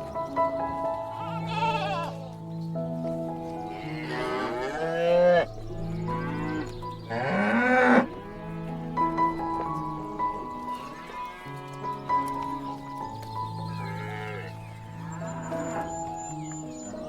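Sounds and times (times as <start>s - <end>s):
soft piano music: 0.0s - 17.0s
cow mooing: 1.1s - 2.3s, 3.6s - 12.4s, 13.7s - 16.0s.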